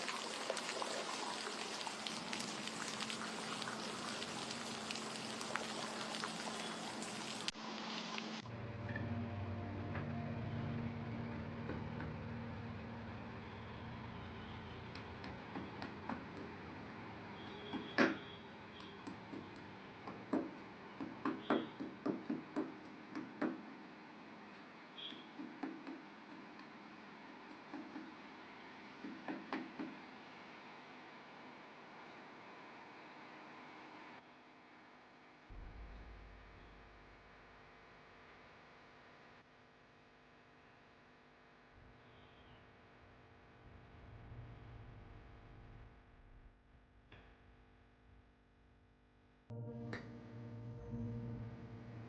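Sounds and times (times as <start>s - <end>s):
steady rain: 0.0s - 8.4s.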